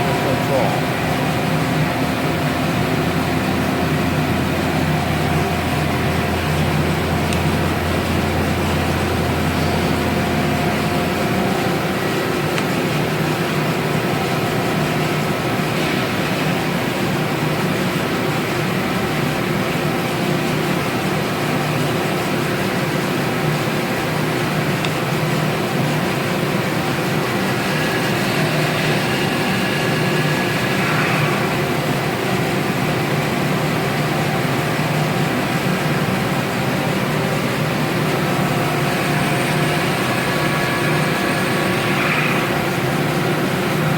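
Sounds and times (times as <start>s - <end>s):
deep hum: 0.0s - 13.0s
machines humming and whining: 0.0s - 43.9s.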